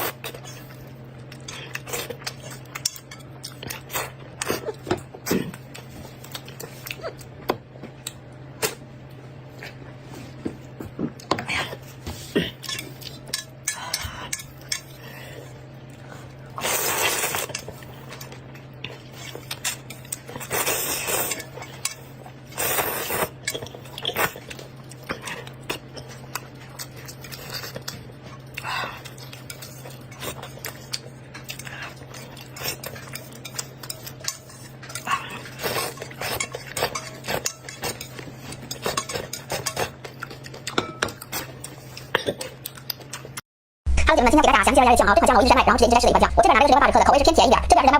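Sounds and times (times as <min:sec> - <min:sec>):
utensils clinking against a bowl: 0:12.6 - 0:15.0, 0:23.4 - 0:43.3.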